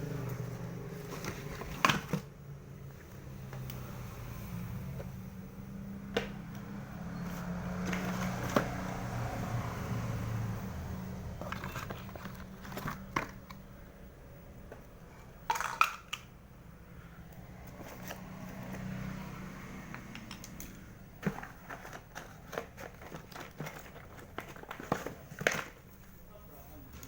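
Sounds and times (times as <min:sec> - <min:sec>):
plastic toy and packaging handling: 0:00.7 - 0:04.0, 0:07.2 - 0:10.6, 0:11.2 - 0:14.0, 0:14.6 - 0:16.4, 0:17.3 - 0:27.0.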